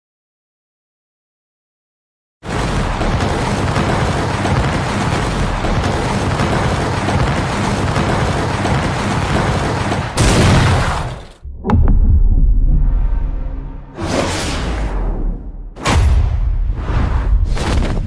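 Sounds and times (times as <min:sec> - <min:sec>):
loud blast: 0:10.2 - 0:17.5.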